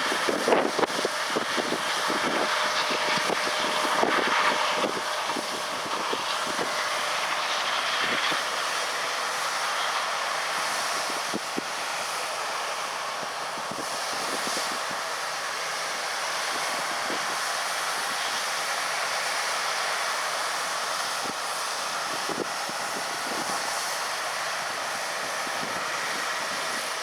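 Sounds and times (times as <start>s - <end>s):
wind buffeting microphone: 0.0s - 8.4s, 21.2s - 27.0s
distant combine harvester hiss: 0.0s - 27.0s.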